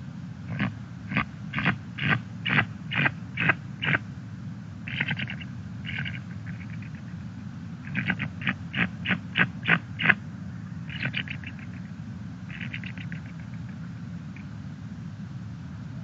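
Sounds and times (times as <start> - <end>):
eagle chittering: 0.5 - 4.0, 4.9 - 14.6
eagle high piping calls: 4.9 - 7.1, 7.8 - 10.2, 10.9 - 11.9, 12.5 - 13.8.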